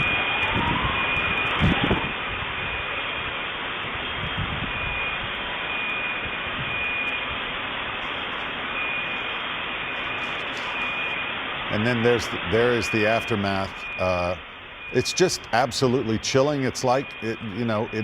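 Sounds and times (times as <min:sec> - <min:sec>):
steady rushing noise: 0:00.0 - 0:18.0
faint high-pitched tone: 0:08.0 - 0:18.0.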